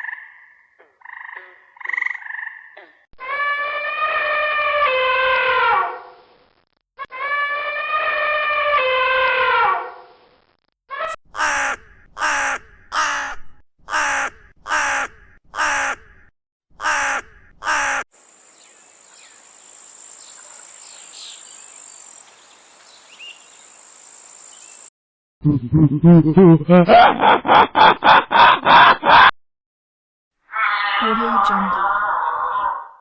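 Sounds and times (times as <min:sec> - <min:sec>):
crow cawing: 0:11.3 - 0:16.1, 0:16.8 - 0:18.0
high steady hiss: 0:18.2 - 0:24.9
faint bird chirps: 0:18.4 - 0:24.9.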